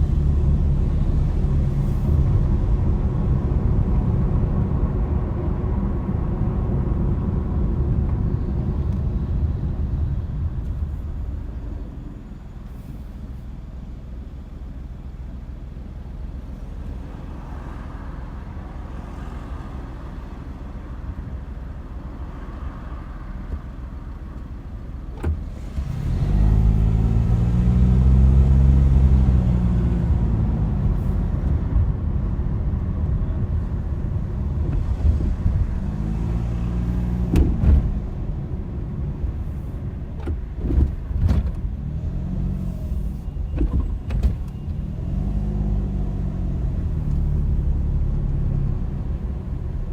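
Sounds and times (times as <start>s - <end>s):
road rumble: 0.0s - 49.9s
car engine accelerating: 22.0s - 49.9s.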